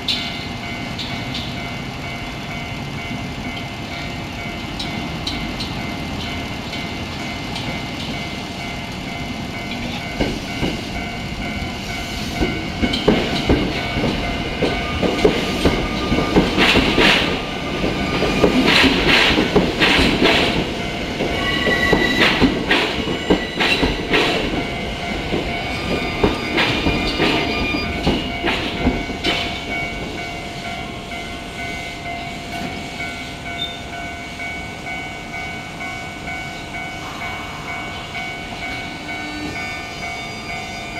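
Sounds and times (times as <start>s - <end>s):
wheels clacking over rail joints: 3.5s - 31.2s.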